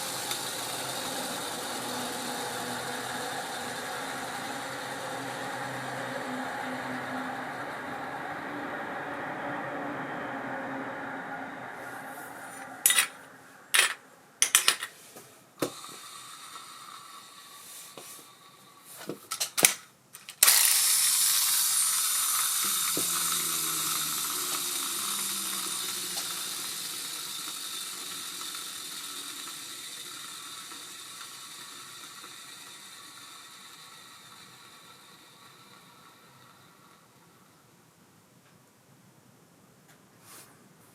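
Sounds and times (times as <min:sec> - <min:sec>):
fishing reel spool whirring: 0:00.0 - 0:09.6, 0:15.8 - 0:18.7, 0:20.4 - 0:37.6.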